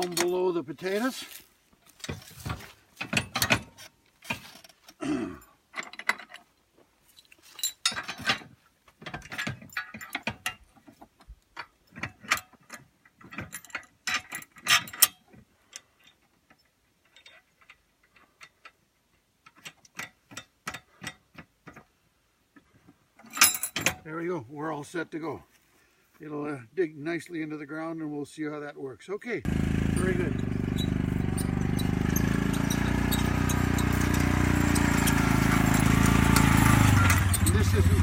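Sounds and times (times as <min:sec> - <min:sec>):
metallic clicks and knocks: 0:00.0 - 0:00.4, 0:02.0 - 0:04.9, 0:05.7 - 0:06.5, 0:07.5 - 0:24.0, 0:29.9 - 0:38.0
small metal ticks: 0:30.0 - 0:37.8.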